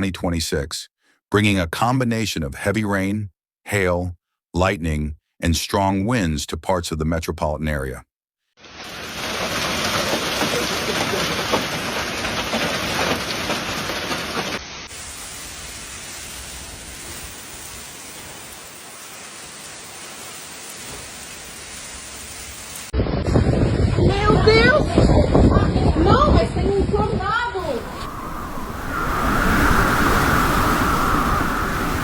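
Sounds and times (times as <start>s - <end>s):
heavy rain pouring: 8.7s - 22.9s, 27.6s - 32.0s.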